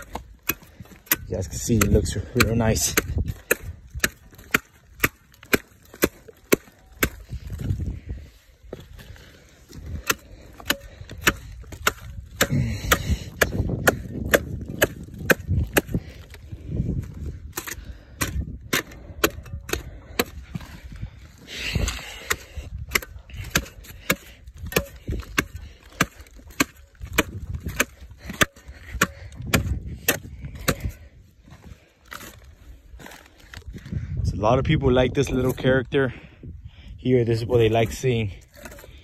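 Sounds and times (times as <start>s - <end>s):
machete chopping palm trunk: 0.0s - 7.7s, 9.9s - 16.4s, 17.5s - 20.6s, 21.8s - 31.0s.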